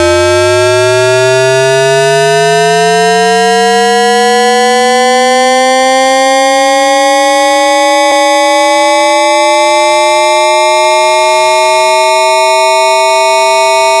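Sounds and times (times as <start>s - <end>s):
buzzy radio whistle tone: 9.7s - 14.0s.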